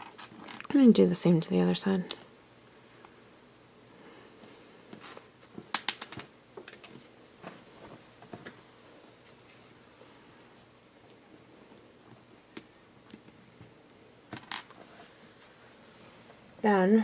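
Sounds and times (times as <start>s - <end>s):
plastic pieces clicking: 5.7s - 7.0s.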